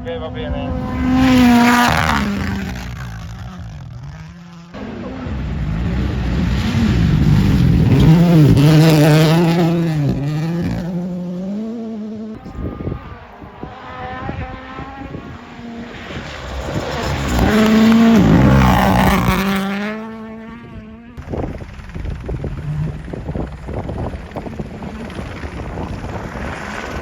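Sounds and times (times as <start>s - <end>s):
rally car engine passing: 0.0s - 27.0s
exhaust crackling: 0.1s - 27.0s.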